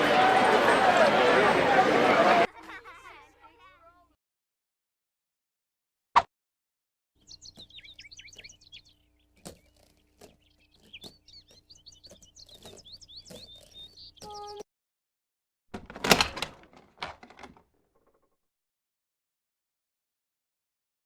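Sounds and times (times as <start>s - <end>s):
small birds chirping: 7.2s - 14.7s.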